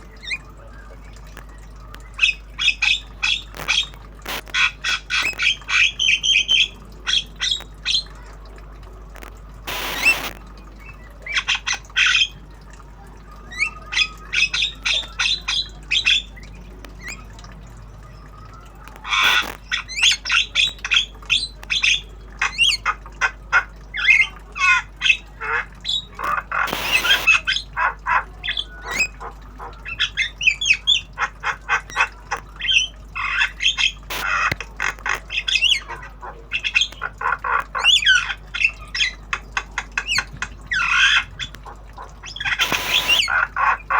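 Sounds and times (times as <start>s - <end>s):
bird harsh squawks: 2.2s - 8.4s, 9.2s - 12.5s, 18.7s - 43.9s.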